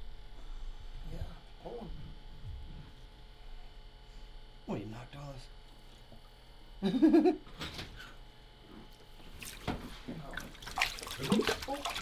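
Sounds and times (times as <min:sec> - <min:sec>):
water splashing and dripping: 0:09.3 - 0:12.0.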